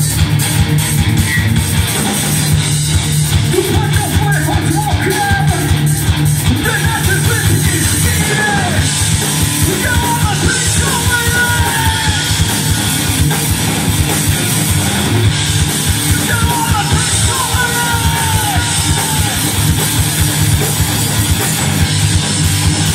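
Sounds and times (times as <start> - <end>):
dense guitar: 0.0 - 22.9
live rock band playing: 0.0 - 22.9
pounding drum kit: 0.0 - 22.9
person singing and yelling: 3.5 - 13.0, 16.0 - 20.1.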